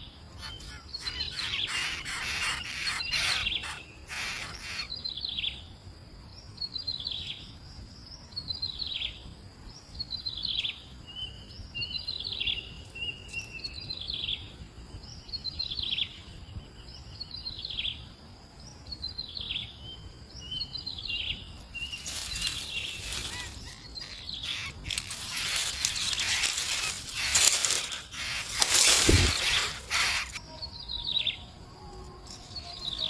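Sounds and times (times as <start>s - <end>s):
loud noisy rustling: 21.9s - 30.4s.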